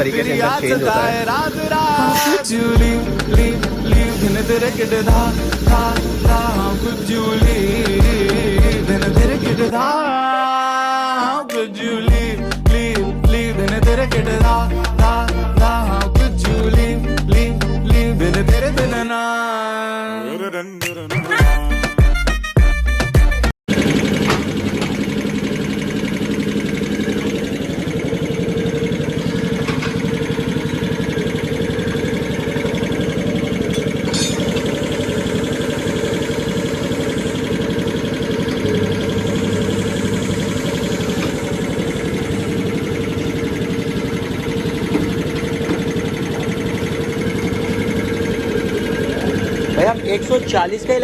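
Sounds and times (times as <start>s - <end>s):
machine hum: 0.0s - 9.8s, 23.7s - 51.0s
workshop noise: 0.0s - 9.8s, 12.1s - 19.0s, 21.1s - 51.0s.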